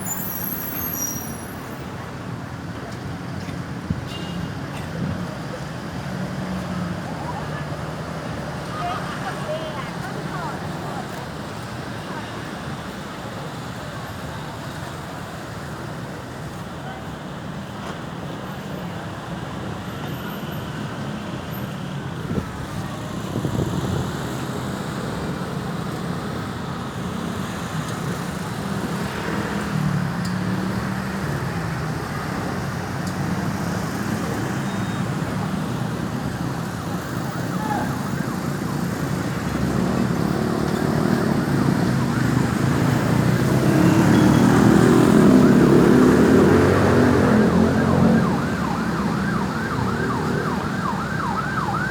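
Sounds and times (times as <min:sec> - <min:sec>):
road traffic noise: 0:00.0 - 0:51.9
ambulance siren: 0:32.0 - 0:51.9.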